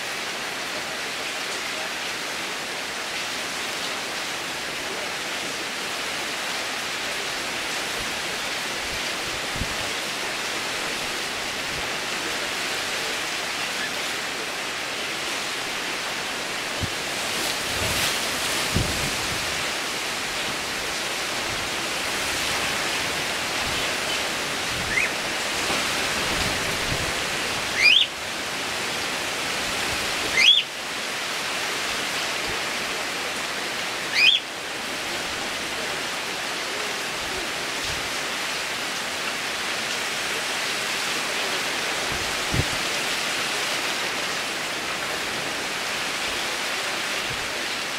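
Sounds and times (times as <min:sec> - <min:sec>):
heavy rain: 0:00.0 - 0:47.9
strong wind: 0:06.8 - 0:33.1, 0:40.1 - 0:47.9.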